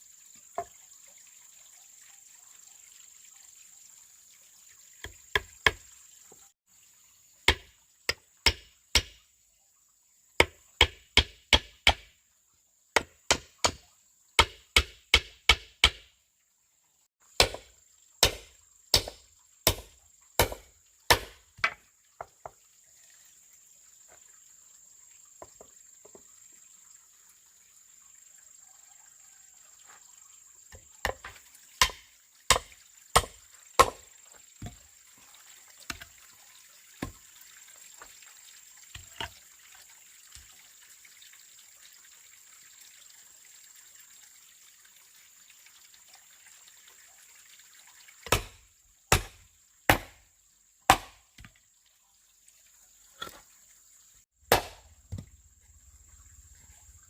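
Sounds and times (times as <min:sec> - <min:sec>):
blade chopping strikes: 0:08.5 - 0:09.2, 0:17.4 - 0:21.4, 0:48.3 - 0:50.2, 0:50.9 - 0:51.2, 0:54.5 - 0:55.2.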